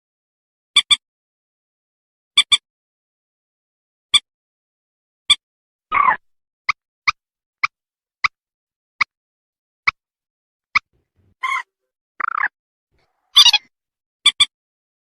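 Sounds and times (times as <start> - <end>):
recorded bird calls: 5.3 - 6.3, 10.8 - 14.5.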